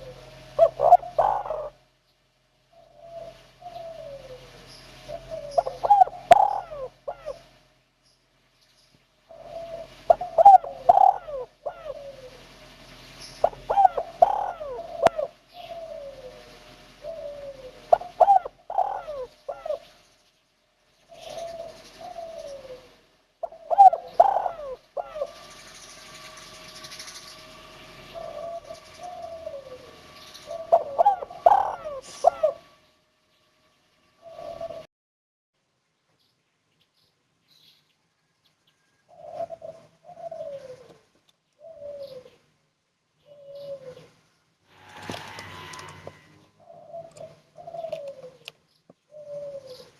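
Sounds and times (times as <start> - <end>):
dove cooing: 0.0 - 1.8, 2.7 - 7.5, 9.3 - 12.6, 13.4 - 20.0, 21.1 - 25.5, 28.1 - 32.7, 34.2 - 34.9, 38.8 - 42.4, 43.2 - 44.2, 44.9 - 48.5, 49.1 - 49.9.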